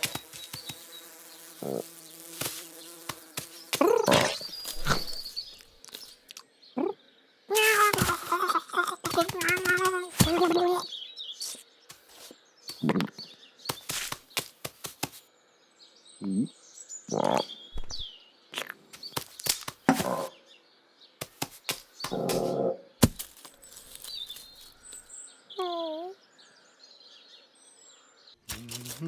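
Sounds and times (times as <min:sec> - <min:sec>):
scuffling: 0:00.0 - 0:01.0, 0:02.2 - 0:06.2, 0:07.5 - 0:10.8, 0:11.4 - 0:15.2, 0:18.9 - 0:20.3, 0:21.2 - 0:25.1, 0:28.5 - 0:29.0
short voice-like sounds: 0:07.5 - 0:10.9
high bird chirps: 0:07.5 - 0:14.5
cartoon knocks and thumps: 0:07.6 - 0:10.8.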